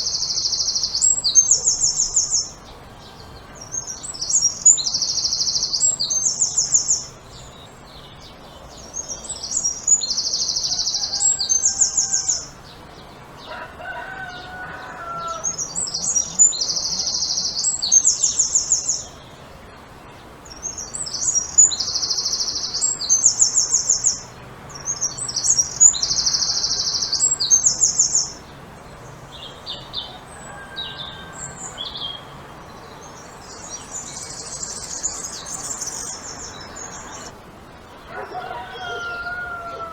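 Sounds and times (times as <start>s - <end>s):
songbird trilling phrase: 0.0s - 2.6s.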